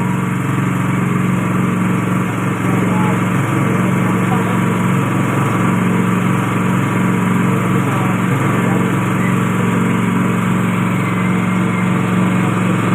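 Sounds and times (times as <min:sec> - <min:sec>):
machine mechanical drone: 0:00.0 - 0:12.9.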